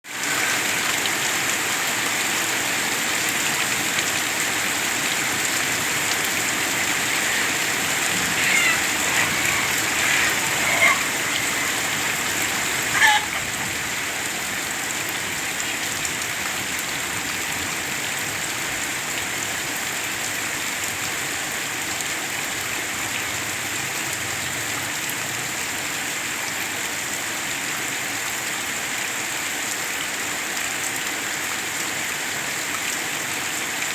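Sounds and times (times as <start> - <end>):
steady rain falling: 0.0 - 33.9
short high-pitched cries: 7.1 - 13.6.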